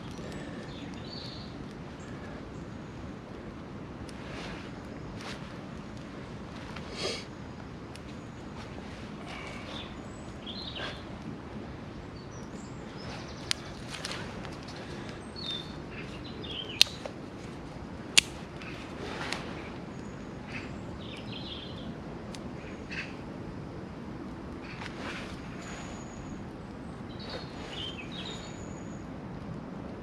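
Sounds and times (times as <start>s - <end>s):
small birds chirping: 0.0s - 3.1s, 9.3s - 11.2s, 14.8s - 17.1s, 25.6s - 29.0s
woodland background: 0.0s - 30.0s
sharp cracks: 16.7s - 17.2s, 18.1s - 18.7s.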